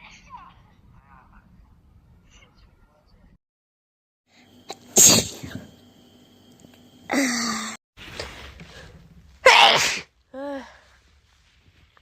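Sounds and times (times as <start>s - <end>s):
woman sneezing: 9.4s - 10.1s.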